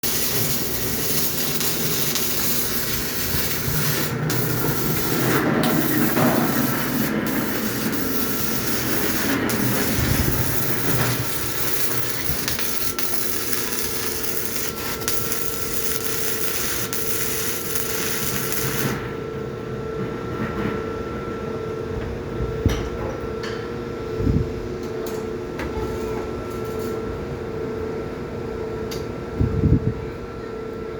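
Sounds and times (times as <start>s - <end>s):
welding arc hissing: 0.0s - 19.1s
steady machine hum: 0.0s - 22.6s.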